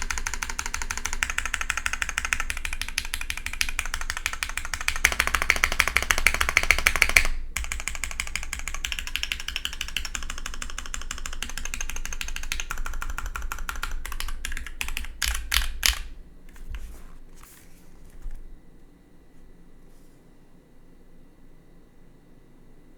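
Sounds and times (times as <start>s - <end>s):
fast typing on mechanical keyboard: 0.0s - 16.2s.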